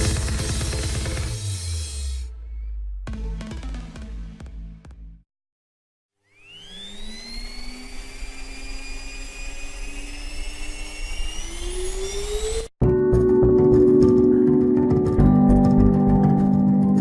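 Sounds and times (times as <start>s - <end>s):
vacuum cleaner motor whining: 6.2s - 12.7s.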